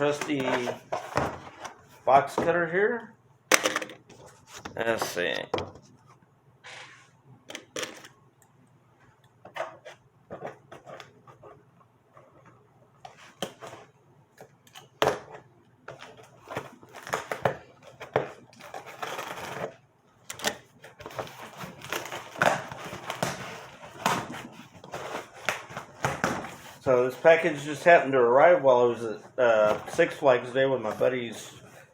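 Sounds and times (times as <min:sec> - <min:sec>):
box cutter cutting cardboard: 0:18.1 - 0:19.7.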